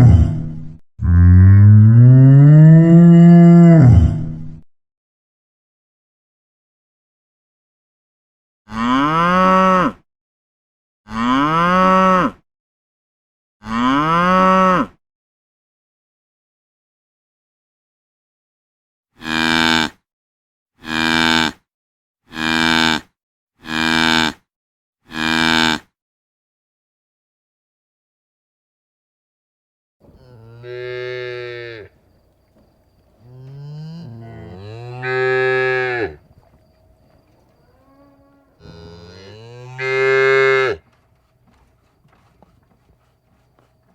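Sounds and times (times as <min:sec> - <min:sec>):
cow mooing: 0:01.0 - 0:04.4, 0:08.7 - 0:10.0, 0:11.1 - 0:12.4, 0:13.6 - 0:15.0, 0:19.2 - 0:20.0, 0:20.8 - 0:21.6, 0:22.3 - 0:24.4, 0:25.1 - 0:25.8, 0:30.0 - 0:32.0, 0:33.2 - 0:36.2, 0:37.6 - 0:40.9.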